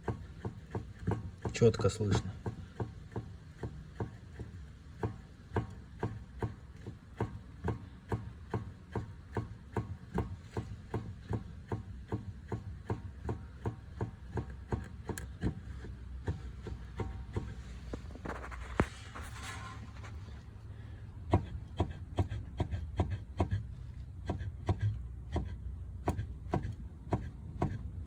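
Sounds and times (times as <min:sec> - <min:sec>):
steering rack knocking: 0:00.0 - 0:18.3.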